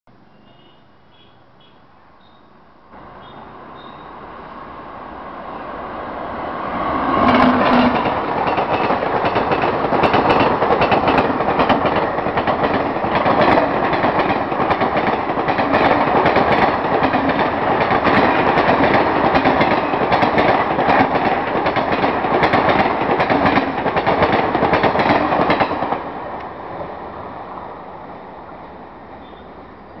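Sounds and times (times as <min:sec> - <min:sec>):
train rushing past: 0:02.9 - 0:30.0
wheels clattering over rail joints: 0:07.2 - 0:26.1.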